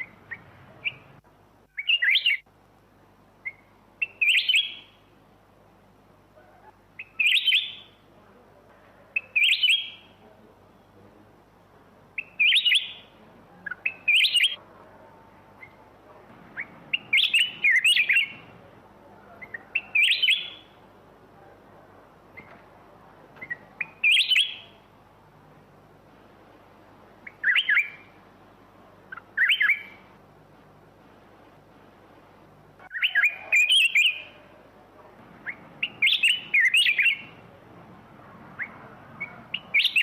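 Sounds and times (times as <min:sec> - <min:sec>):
bird singing warbled phrases: 0:00.0 - 0:02.5, 0:03.4 - 0:05.1, 0:06.4 - 0:08.0, 0:09.1 - 0:11.0, 0:12.1 - 0:14.6, 0:15.4 - 0:20.8, 0:23.4 - 0:24.9, 0:27.2 - 0:28.2, 0:29.0 - 0:30.1, 0:32.8 - 0:34.6, 0:35.4 - 0:37.5, 0:38.5 - 0:40.0.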